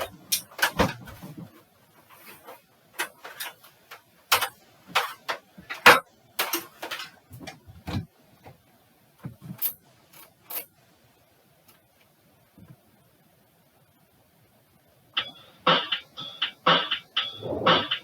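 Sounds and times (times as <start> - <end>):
irregular clicks and knocks: 3.0 - 8.6.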